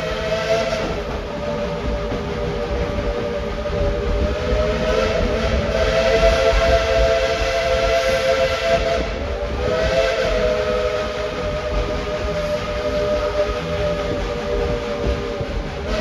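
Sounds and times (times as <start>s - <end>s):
steam whistle chord: 0.0s - 1.3s, 3.6s - 15.1s
hiss of steam: 0.0s - 16.0s.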